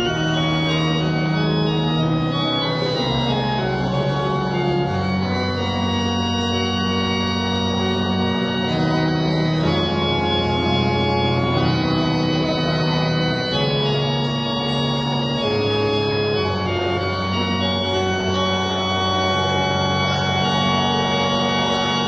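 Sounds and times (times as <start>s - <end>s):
organ playing slow chords: 0.0s - 22.0s.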